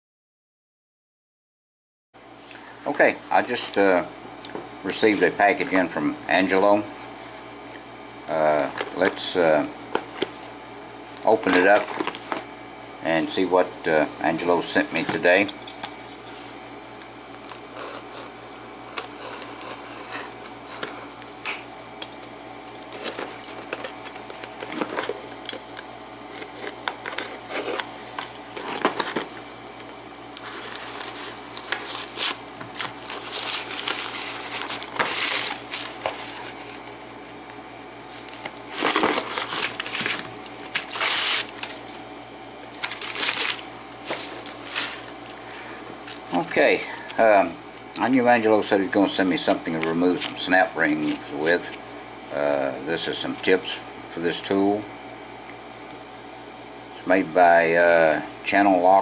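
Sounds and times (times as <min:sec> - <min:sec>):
packaging tearing and rustling: 0:11.3 - 0:12.5, 0:17.4 - 0:25.6, 0:26.3 - 0:29.4, 0:30.3 - 0:36.9, 0:38.1 - 0:42.0, 0:42.6 - 0:46.5, 0:49.4 - 0:51.3.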